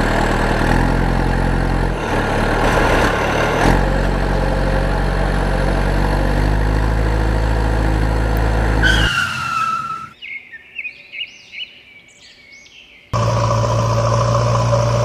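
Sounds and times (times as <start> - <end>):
heavy vehicle engine running: 0.0 - 9.4, 13.2 - 15.0
short falling squeal: 8.8 - 10.2
birds chirping: 8.8 - 13.4.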